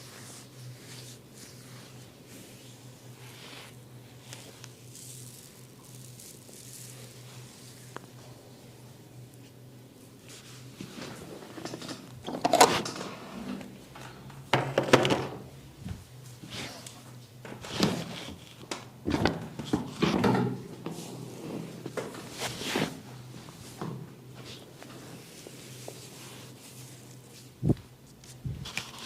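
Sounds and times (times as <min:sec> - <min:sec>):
hands rubbing skin and hair: 0:00.0 - 0:08.3, 0:21.0 - 0:23.8, 0:24.4 - 0:29.0.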